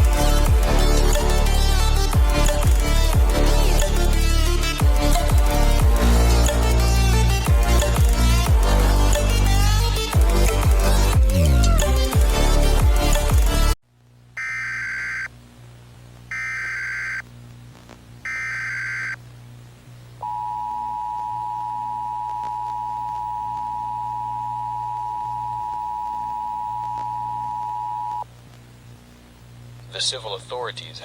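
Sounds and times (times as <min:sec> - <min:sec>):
shrill digital data tones: 0:16.3 - 0:17.2, 0:18.3 - 0:19.2.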